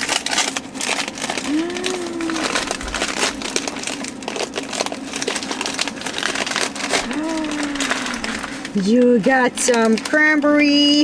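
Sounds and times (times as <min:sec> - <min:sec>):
wrapping paper crinkling: 0:00.0 - 0:11.0
short low voiced note: 0:01.5 - 0:03.3, 0:07.0 - 0:08.7.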